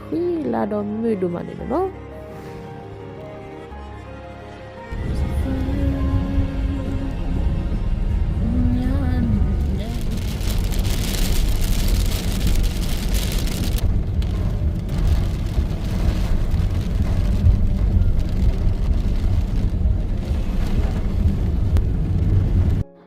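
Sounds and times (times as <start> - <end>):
car road and engine rumble: 4.8 - 22.8
rain and tyre spray hiss: 7.4 - 22.8.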